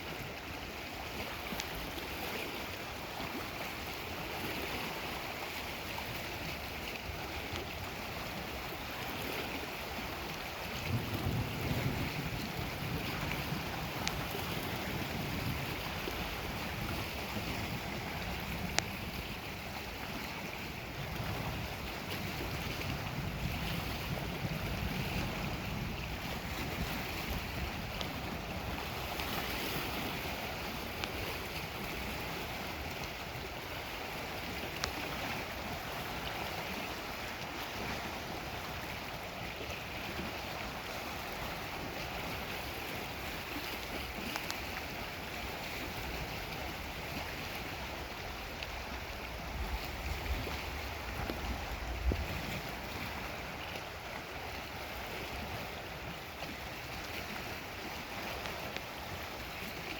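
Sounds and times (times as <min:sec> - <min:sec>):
waves washing on shore: 0:00.0 - 0:59.9
wind buffeting microphone: 0:03.3 - 0:59.9
faint sharp clicks: 0:34.8 - 0:35.0, 0:44.3 - 0:44.6.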